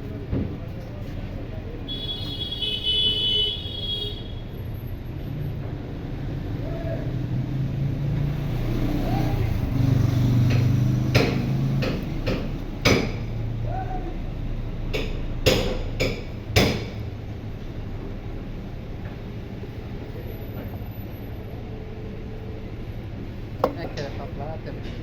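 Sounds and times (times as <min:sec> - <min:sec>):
sharp metallic knocks and clanks: 0:10.4 - 0:13.3, 0:15.0 - 0:17.0, 0:23.6 - 0:24.0.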